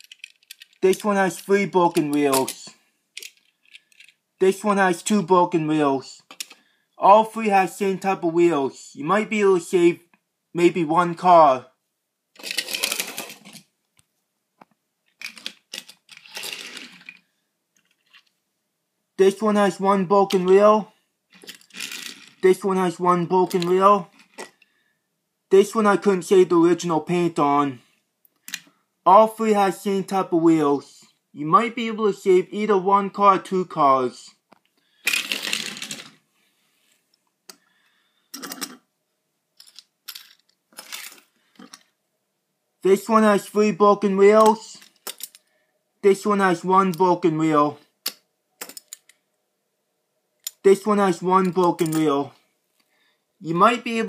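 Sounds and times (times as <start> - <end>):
toy cars clattering on hard surface: 0.0 - 1.1, 12.4 - 13.7, 15.1 - 18.3, 21.3 - 22.4, 35.1 - 36.2.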